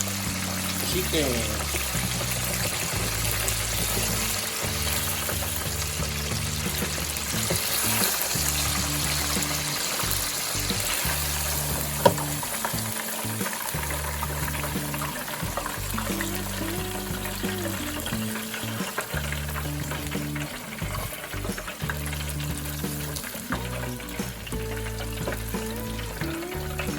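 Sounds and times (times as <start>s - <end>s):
background music: 0.0s - 26.9s
chicken sizzling in oil: 0.0s - 26.9s.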